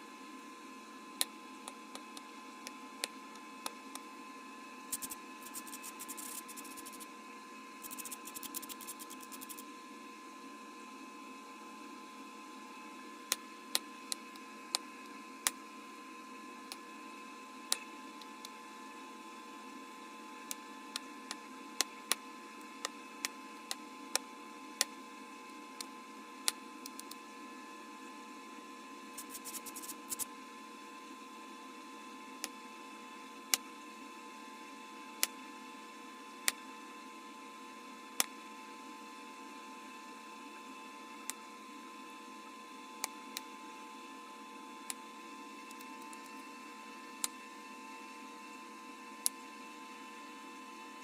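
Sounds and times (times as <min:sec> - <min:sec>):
high hum: 0:04.9 - 0:07.0, 0:07.8 - 0:09.6, 0:29.2 - 0:30.2.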